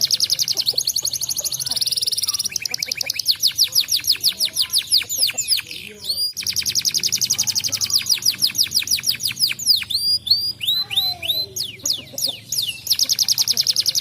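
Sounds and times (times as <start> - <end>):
canary singing: 0.0 - 14.0.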